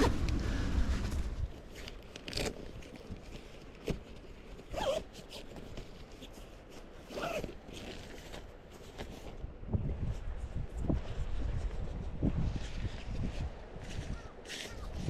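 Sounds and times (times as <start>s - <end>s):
handling rustles: 0.0s - 9.4s
zipper rasping: 4.7s - 5.6s, 7.0s - 8.5s.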